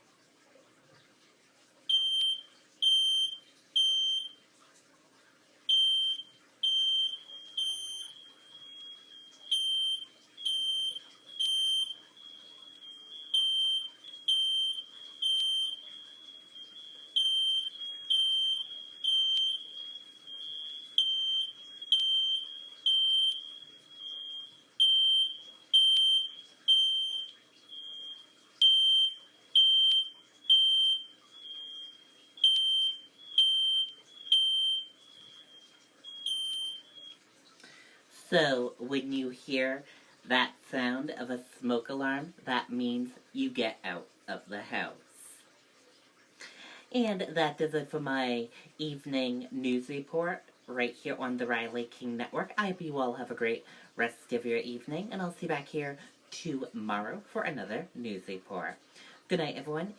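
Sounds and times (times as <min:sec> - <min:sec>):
smoke alarm beeping: 0:01.9 - 0:04.4, 0:05.7 - 0:37.2.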